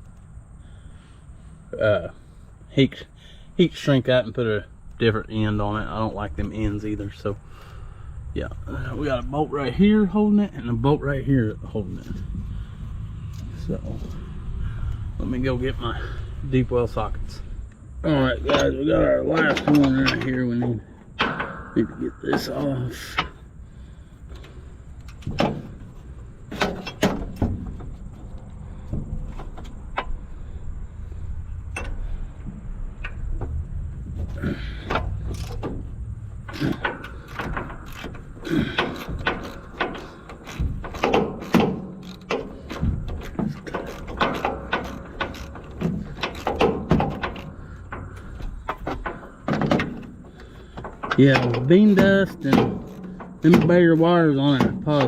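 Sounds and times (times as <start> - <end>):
low rumble: 4.6 - 26.5
ratchet clicking on metal: 34.6 - 55.0.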